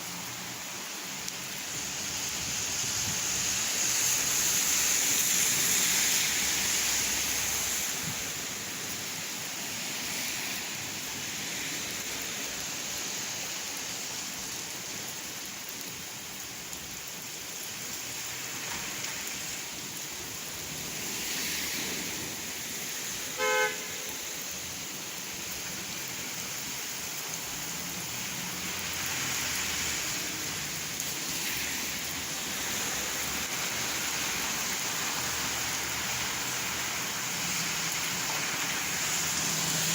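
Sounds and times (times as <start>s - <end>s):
steady rain falling: 0.0s - 39.9s
short horn toot: 23.4s - 23.9s.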